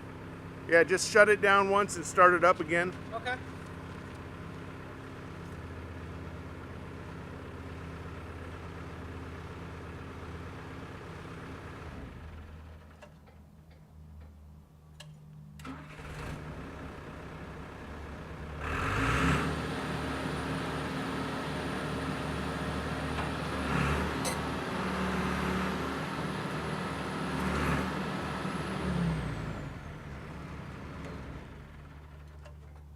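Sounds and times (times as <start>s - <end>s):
diesel engine idling: 28.1s - 32.9s.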